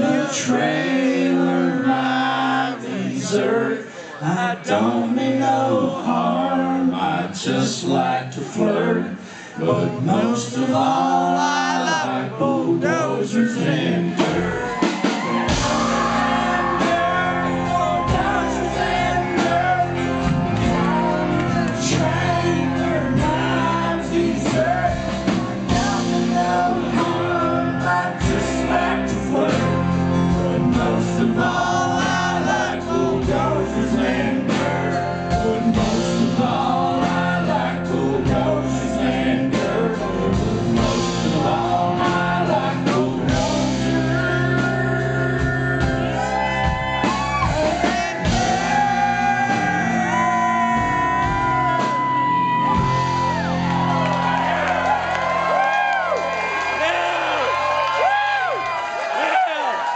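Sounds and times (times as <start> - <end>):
drums: 10.0 - 59.9
electric guitars: 14.2 - 58.9.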